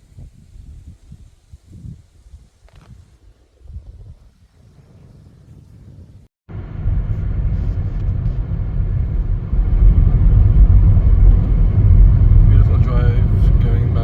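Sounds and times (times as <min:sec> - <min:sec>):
car driving rumble: 0:06.5 - 0:14.0.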